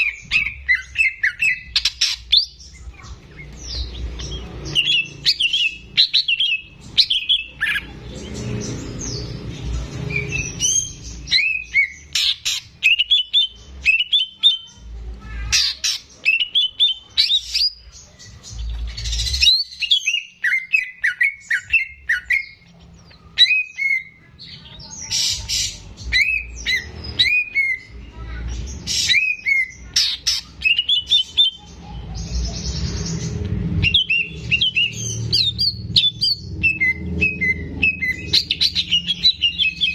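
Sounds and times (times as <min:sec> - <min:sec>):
bird singing whistled notes: 0:33.8 - 0:39.9.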